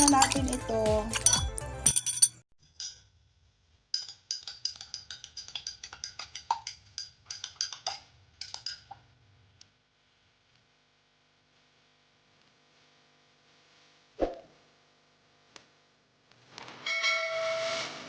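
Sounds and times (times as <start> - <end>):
spoon clinking against a glass: 0.0 - 3.0.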